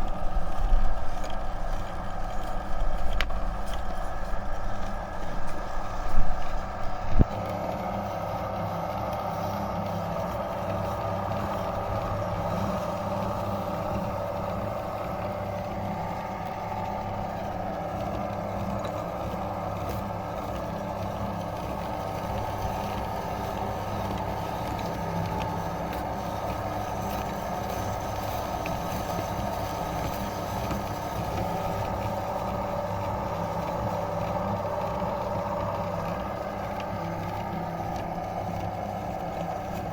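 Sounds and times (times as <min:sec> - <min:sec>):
electric meat grinder running: 0:00.0 - 0:39.9.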